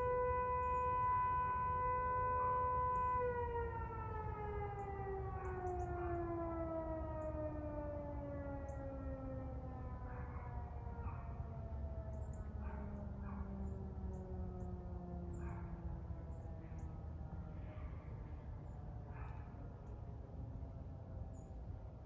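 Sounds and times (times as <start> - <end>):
fire siren winding down: 0.0 - 17.7.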